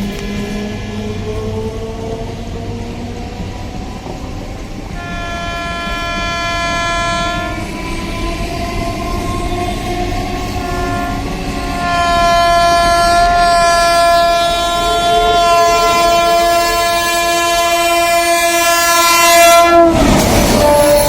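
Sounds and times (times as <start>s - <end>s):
locomotive rushing past: 0.0s - 21.0s
locomotive horn blast: 5.0s - 21.0s.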